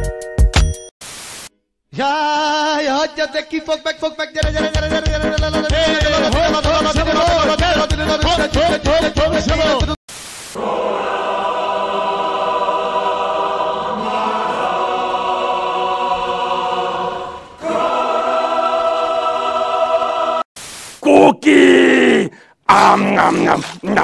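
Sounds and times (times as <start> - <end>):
choir singing held chords: 10.6 - 20.5.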